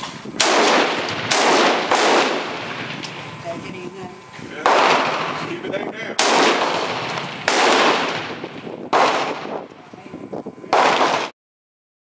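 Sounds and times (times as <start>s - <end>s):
gunshots with echo: 0.4s - 3.1s, 4.6s - 5.6s, 6.2s - 9.7s, 10.7s - 11.3s.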